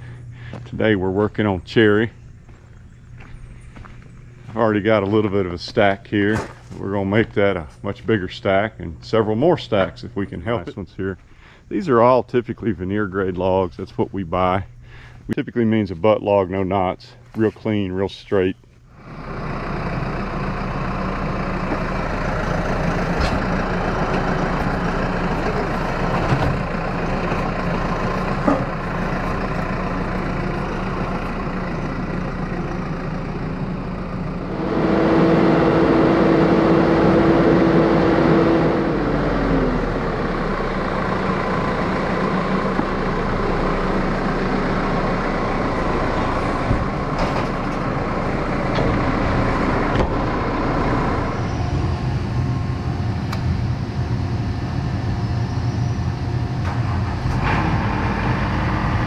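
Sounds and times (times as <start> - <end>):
machinery whine: 0.0 - 17.0, 17.7 - 59.0
heavy machinery running: 18.9 - 59.0.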